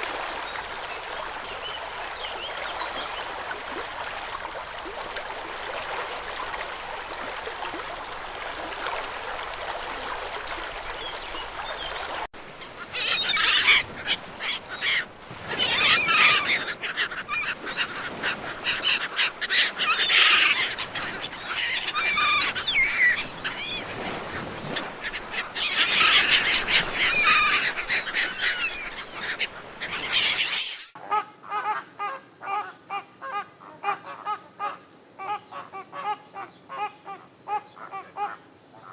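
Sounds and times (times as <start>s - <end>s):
running water: 0.0s - 16.7s.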